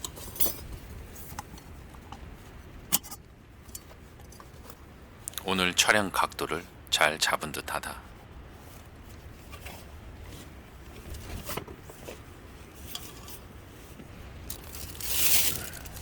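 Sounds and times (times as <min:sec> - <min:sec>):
low steady rumble: 0:00.0 - 0:16.0
rustling swish: 0:14.6 - 0:16.0.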